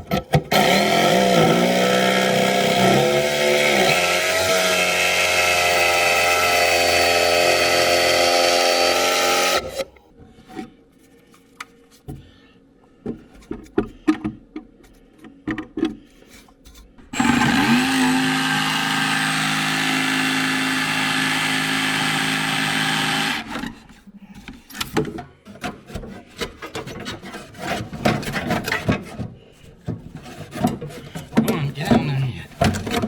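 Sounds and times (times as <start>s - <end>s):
power tool motor whining: 0.5s - 9.9s, 17.2s - 23.7s.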